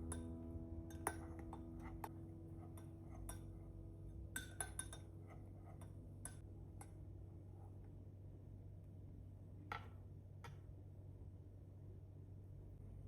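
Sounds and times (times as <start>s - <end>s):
sustained musical chord: 0.0s - 6.4s
glass and utensils clinking: 4.4s - 5.1s.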